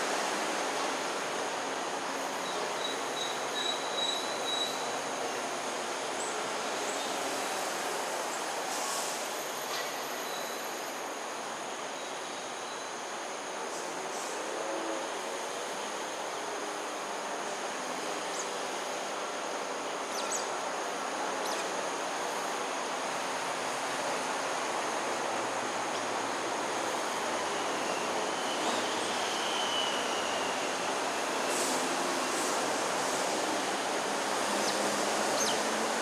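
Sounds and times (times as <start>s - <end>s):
thin whistle: 27.9s - 30.7s.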